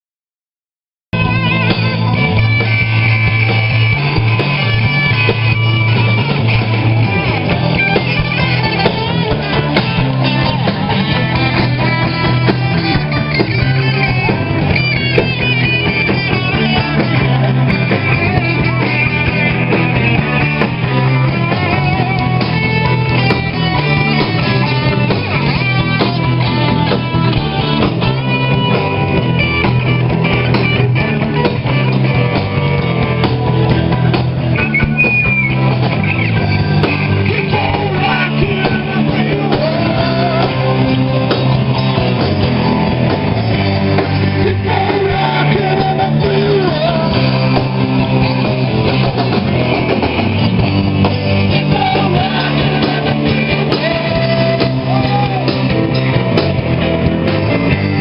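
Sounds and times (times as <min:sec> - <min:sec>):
rock band playing live: 0:01.1 - 0:58.0
person singing: 0:36.5 - 0:43.2, 0:43.9 - 0:48.1, 0:51.3 - 0:56.1.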